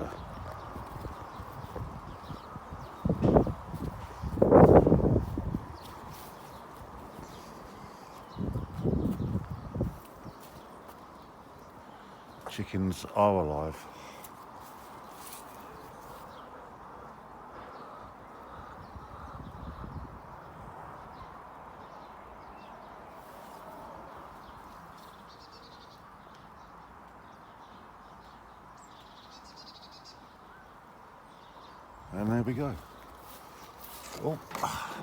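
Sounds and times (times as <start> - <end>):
wind buffeting microphone: 0.0 - 10.7, 18.5 - 21.4.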